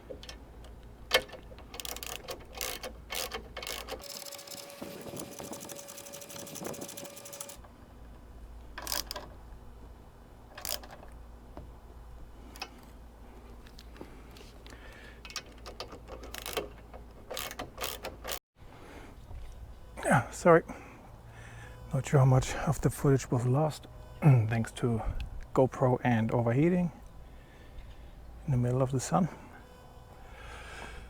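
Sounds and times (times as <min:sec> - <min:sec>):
ratchet wrench clicking: 0:01.1 - 0:07.6, 0:08.8 - 0:09.2, 0:10.6 - 0:11.0, 0:15.2 - 0:18.4.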